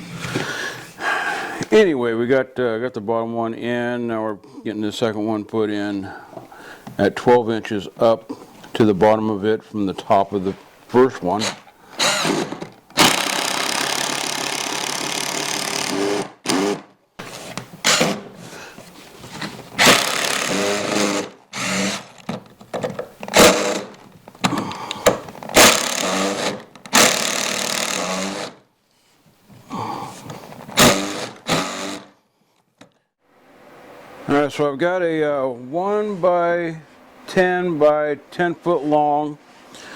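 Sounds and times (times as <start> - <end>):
power drill driving screws into wood: 11.4 - 18.4, 19.8 - 22.3, 23.2 - 28.6, 30.7 - 32.2.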